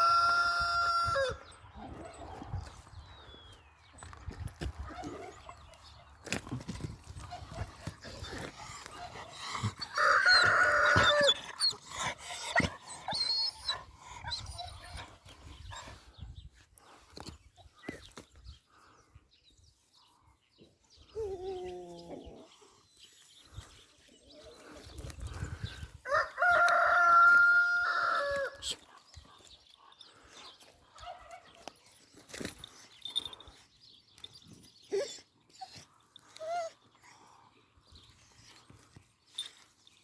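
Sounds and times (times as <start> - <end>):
rooster crowing: 0.0 - 1.4, 9.9 - 11.3, 26.1 - 28.6.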